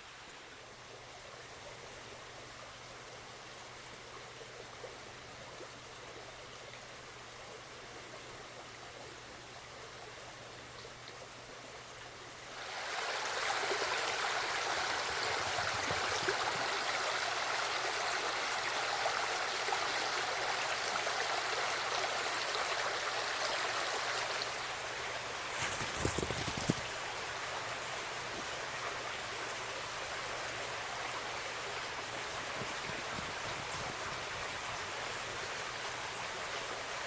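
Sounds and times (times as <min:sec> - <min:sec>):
creek water rushing over rocks: 0:12.5 - 0:37.0.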